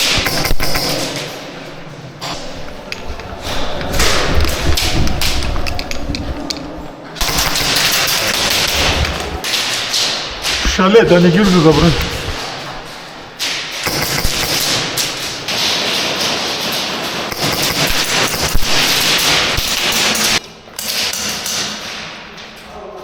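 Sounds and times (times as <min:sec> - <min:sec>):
airsoft guns firing bursts: 0:00.0 - 0:01.3, 0:07.2 - 0:12.6, 0:13.5 - 0:20.4
bb impacts: 0:02.2 - 0:16.4.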